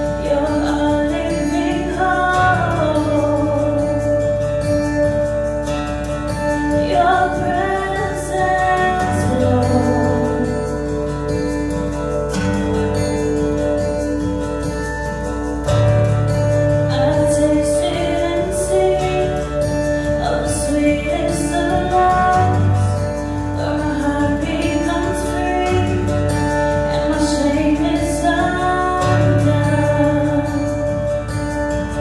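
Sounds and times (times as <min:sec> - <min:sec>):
woman singing praise song: 0:00.0 - 0:04.5, 0:06.7 - 0:11.2, 0:16.9 - 0:31.3
guitar: 0:00.0 - 0:32.0
steady bass: 0:00.0 - 0:32.0.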